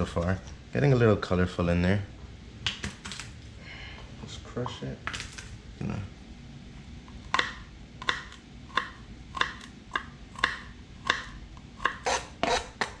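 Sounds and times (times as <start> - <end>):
food chopping strikes: 7.2 - 13.0.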